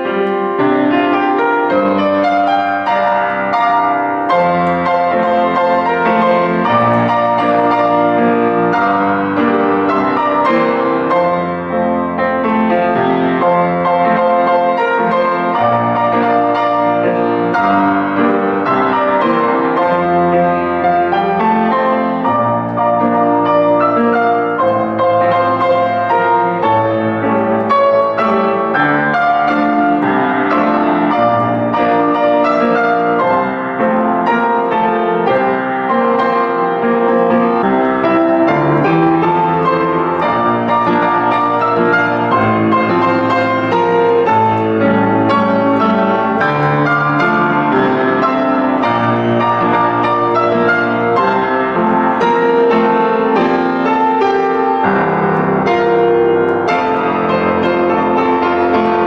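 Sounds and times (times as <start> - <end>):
slow piano piece: 0.0 - 59.0.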